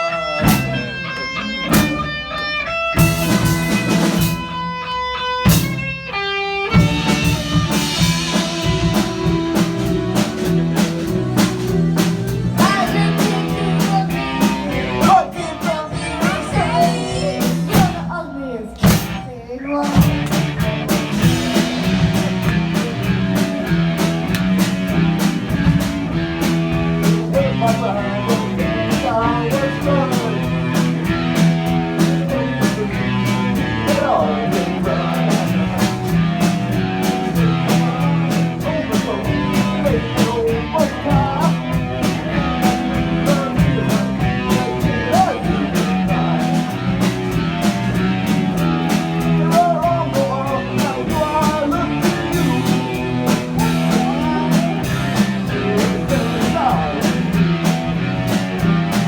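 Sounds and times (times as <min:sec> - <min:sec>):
drums: 0:00.0 - 0:59.0
electric guitar: 0:00.0 - 0:59.0
person singing: 0:06.7 - 0:20.2, 0:26.9 - 0:57.6.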